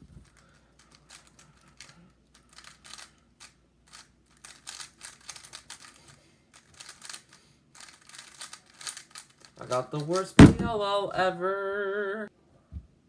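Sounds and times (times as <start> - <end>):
puzzle cube plastic clacks: 0.3 - 10.4.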